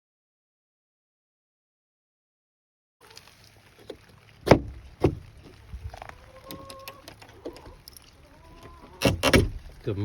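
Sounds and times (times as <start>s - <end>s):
sharp knocks: 9.0s - 9.6s.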